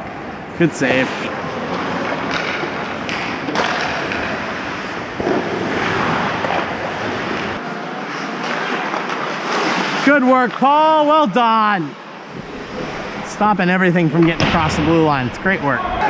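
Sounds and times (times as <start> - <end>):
skate blades scraping ice: 0.9 - 10.1.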